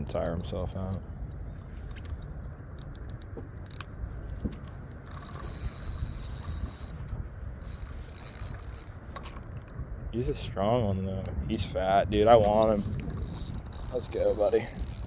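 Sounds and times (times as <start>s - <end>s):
fishing reel drag buzzing: 5.1s - 9.0s, 12.6s - 15.0s.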